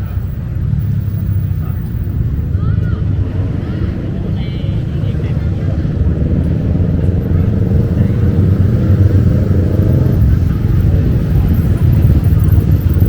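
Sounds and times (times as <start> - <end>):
passing cars and motorbikes: 0.0 - 13.0.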